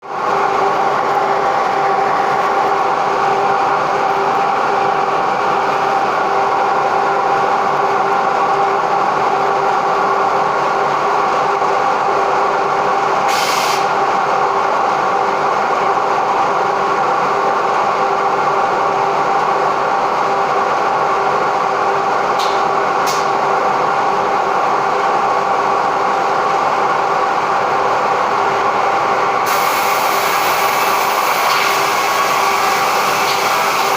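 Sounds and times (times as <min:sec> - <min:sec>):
air hiss: 0:13.3 - 0:13.9, 0:29.4 - 0:33.9.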